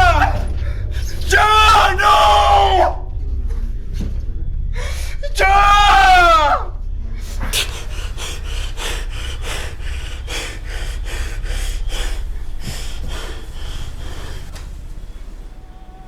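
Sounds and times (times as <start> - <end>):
low steady rumble: 0.0 - 16.0
person breathing hard: 4.7 - 5.2, 7.1 - 15.7.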